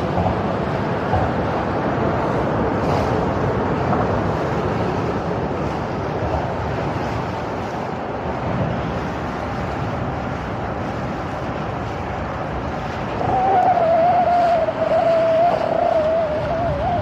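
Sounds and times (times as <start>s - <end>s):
rumbling rushing boat noise: 0.0s - 17.0s
wavering tone: 13.2s - 17.0s.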